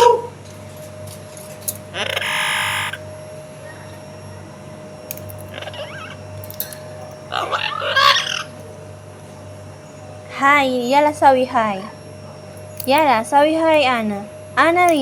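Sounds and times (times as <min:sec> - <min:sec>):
faint steady hum: 0:00.0 - 0:15.0
parrot chirping and warbling: 0:01.7 - 0:03.0, 0:05.1 - 0:08.7
parrot squawking: 0:01.7 - 0:03.0, 0:05.1 - 0:08.6.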